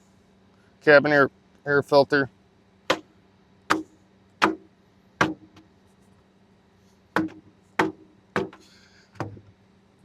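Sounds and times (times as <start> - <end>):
faint steady hum: 0.0 - 10.0
sharp knocks: 2.9 - 3.1, 3.7 - 5.7, 7.2 - 9.5.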